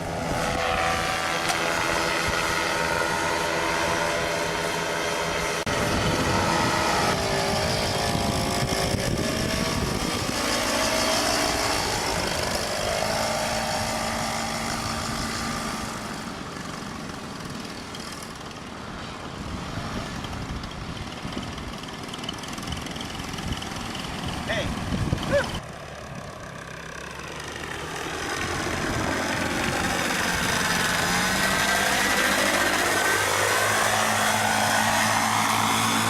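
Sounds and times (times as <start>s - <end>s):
paramotor engine and propeller: 0.0s - 36.0s.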